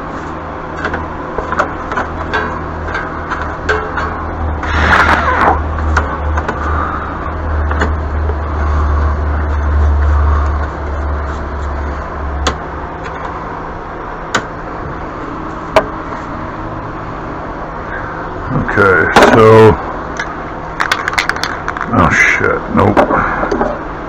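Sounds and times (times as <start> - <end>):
motor rumbling: 0.0 - 24.0.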